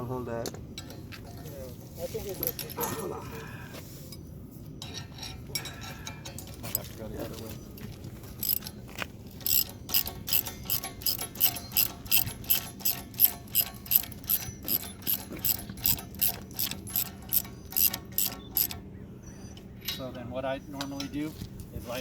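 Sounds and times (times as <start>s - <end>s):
ratchet wrench clicking: 8.3s - 18.8s.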